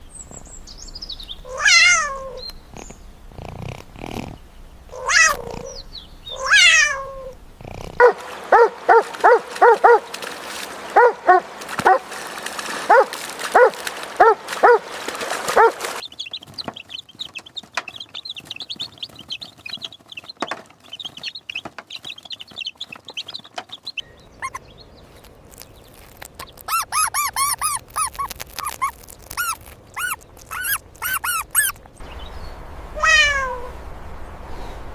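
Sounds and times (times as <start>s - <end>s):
cat meowing: 1.4s - 2.4s, 4.9s - 5.7s, 6.3s - 7.4s, 33.0s - 33.7s
dog barking: 8.0s - 10.1s, 10.9s - 12.1s, 12.9s - 14.9s, 15.6s - 15.8s
high chirping: 16.0s - 33.4s.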